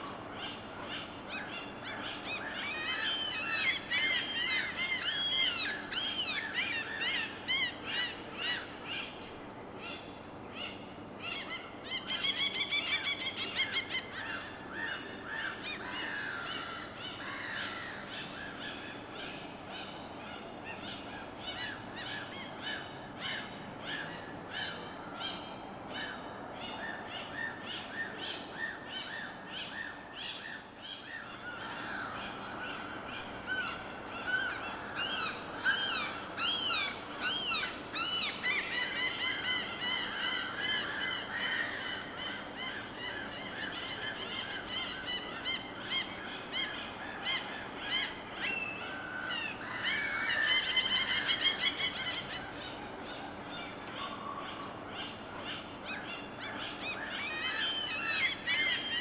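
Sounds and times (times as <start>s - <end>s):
faint background noise: 0.0s - 59.0s.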